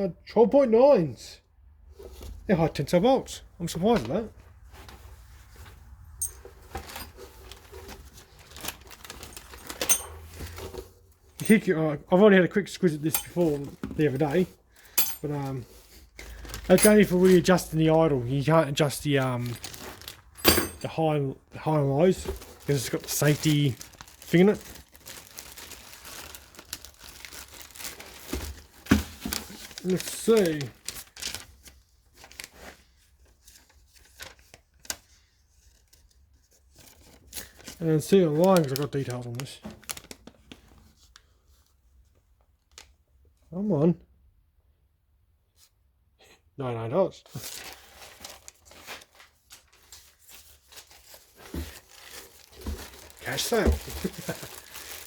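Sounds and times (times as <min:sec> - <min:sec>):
packaging rustling: 0:04.1 - 0:11.8, 0:12.8 - 0:21.0, 0:21.7 - 0:32.8, 0:36.9 - 0:40.7, 0:47.4 - 0:55.0.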